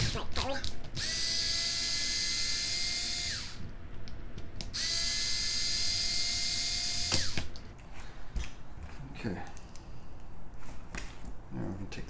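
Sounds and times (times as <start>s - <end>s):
cordless screwdriver whine: 1.0s - 3.6s, 4.7s - 7.5s.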